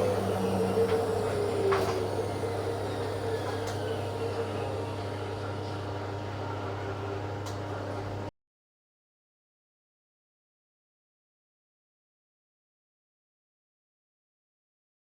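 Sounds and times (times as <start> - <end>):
washing machine spinning hum: 0.0 - 8.3.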